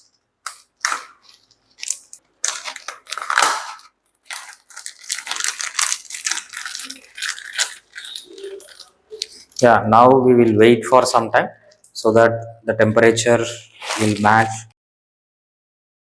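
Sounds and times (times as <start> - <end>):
plastic bags crinkling: 0.0 - 9.6, 13.7 - 14.6.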